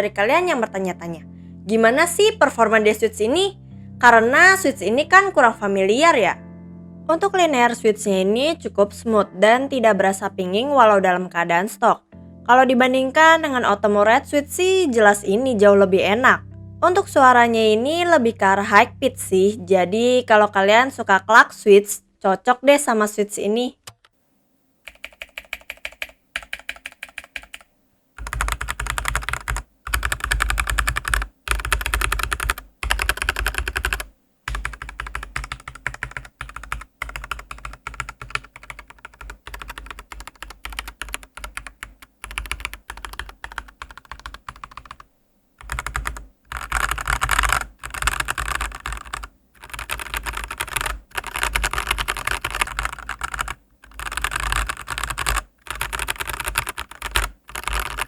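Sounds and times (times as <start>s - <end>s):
mechanical keyboard typing: 24.9s - 45.0s, 45.6s - 58.0s.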